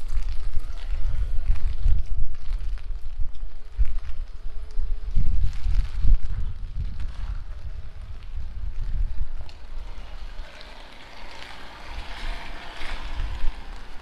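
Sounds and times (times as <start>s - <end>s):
steady rainfall: 0.0s - 14.0s
wind buffeting microphone: 0.0s - 14.0s.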